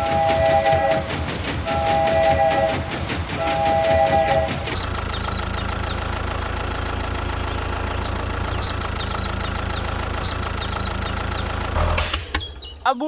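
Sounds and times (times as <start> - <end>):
engine idling: 0.0 - 13.0
birds chirping: 3.5 - 13.0.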